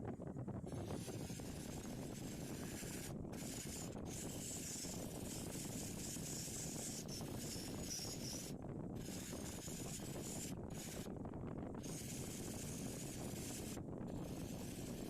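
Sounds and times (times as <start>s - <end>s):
motor running: 0.7s - 11.1s, 11.8s - 15.0s
wire wheel scrubbing metal: 0.7s - 11.1s.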